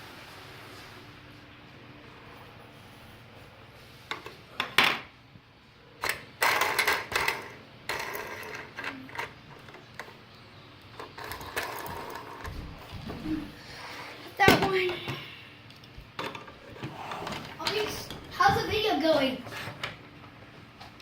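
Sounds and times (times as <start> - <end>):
plastic toy parts clicking and rattling: 6.0 - 10.1.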